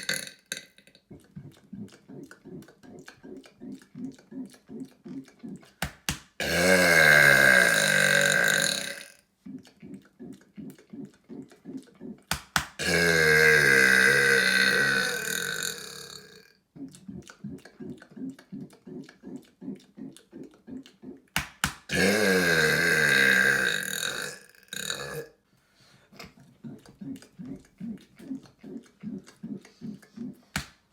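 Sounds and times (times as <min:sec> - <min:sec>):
man burping loudly: 0:00.0 - 0:00.8, 0:06.4 - 0:09.2, 0:12.8 - 0:16.5, 0:21.9 - 0:25.3.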